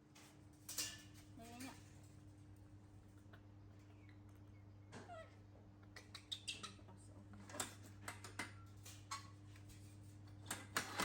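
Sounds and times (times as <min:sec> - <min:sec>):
faint steady hum: 0:00.0 - 0:10.6.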